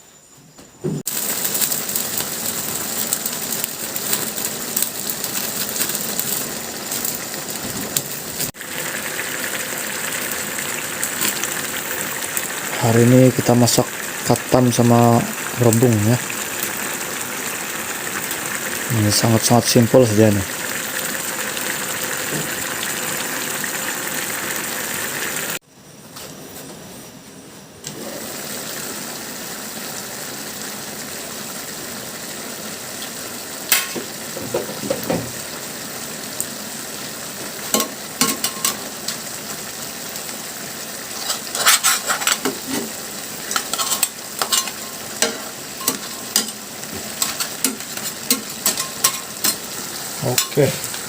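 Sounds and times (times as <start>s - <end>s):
food sizzling in a pan: 0.6s - 25.6s, 27.9s - 51.0s
spatula scraping pan: 41.1s - 49.6s.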